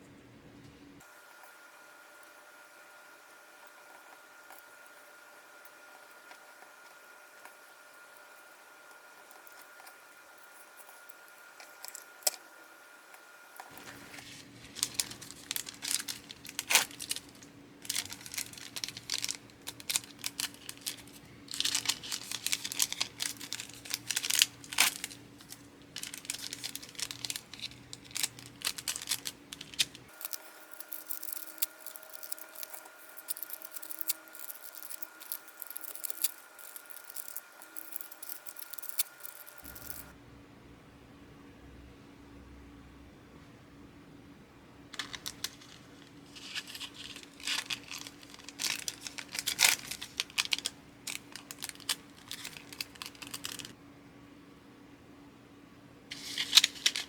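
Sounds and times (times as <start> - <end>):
wrapping material crinkling and tearing: 13.7 - 40.1, 44.9 - 53.8, 56.1 - 57.0.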